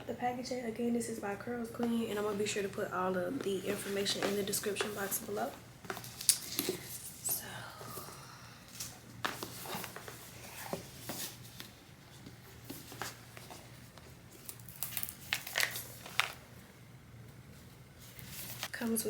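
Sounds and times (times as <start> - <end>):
packaging rustling and crinkling: 8.8 - 16.6.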